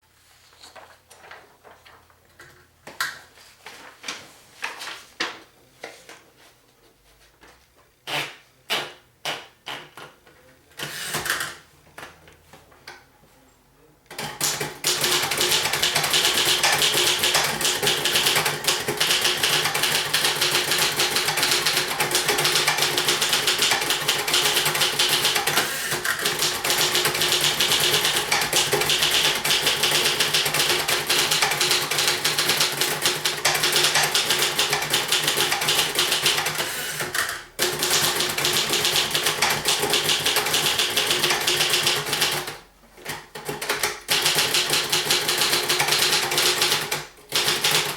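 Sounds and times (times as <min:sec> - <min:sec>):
manual typewriter typing: 0:14.1 - 0:47.9.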